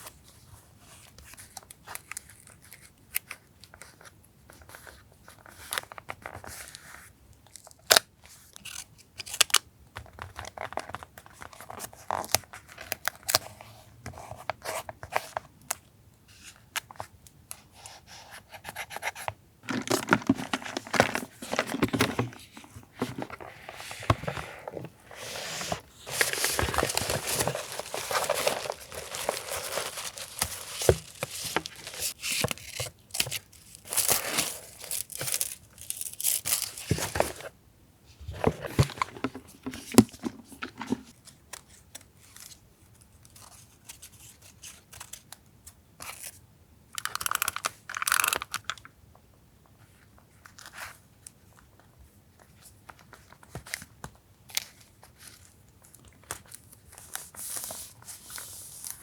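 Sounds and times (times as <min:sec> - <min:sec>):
paper tearing and crinkling: 0:25.1 - 0:37.0.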